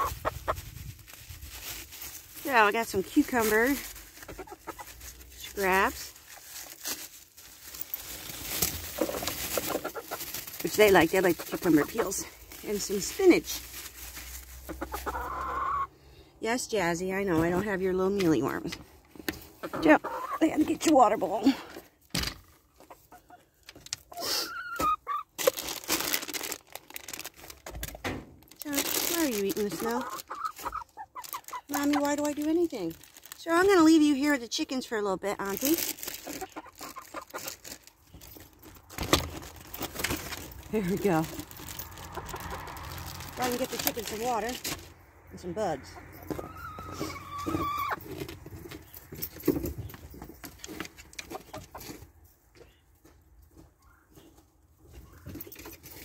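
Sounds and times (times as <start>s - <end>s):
crunching in snow: 0.0s - 15.3s
knocks and rustles: 46.1s - 56.0s.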